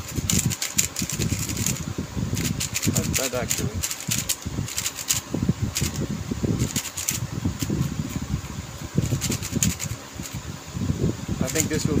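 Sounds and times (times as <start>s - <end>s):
puzzle cube layers clacking: 0.1s - 1.8s, 2.4s - 5.2s, 6.6s - 7.8s, 9.0s - 10.4s.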